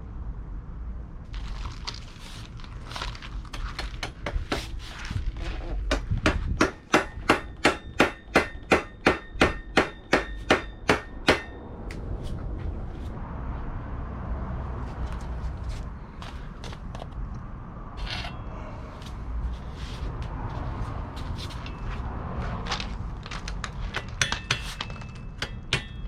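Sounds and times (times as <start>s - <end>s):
hammer striking metal: 5.9s - 11.8s, 24.0s - 26.0s.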